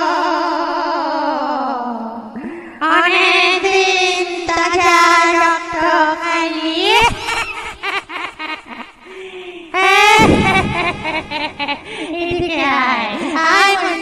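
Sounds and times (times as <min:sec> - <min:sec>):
woman wailing eerily: 0:09.2 - 0:12.4.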